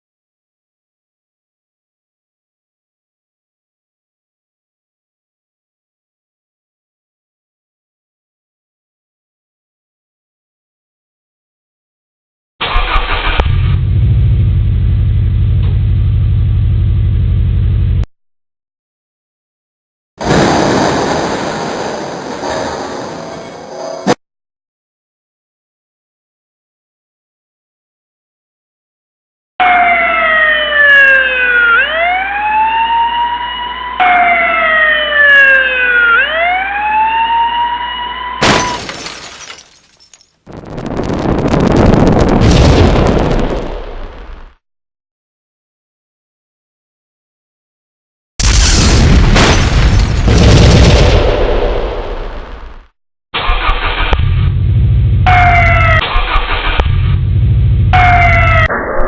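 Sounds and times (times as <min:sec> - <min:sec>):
car engine running: 0:13.7 - 0:18.0
loud burst of noise: 0:20.2 - 0:24.2, 0:48.4 - 0:59.0
siren wailing: 0:29.6 - 0:38.8, 0:54.7 - 0:56.8, 0:57.4 - 0:59.0.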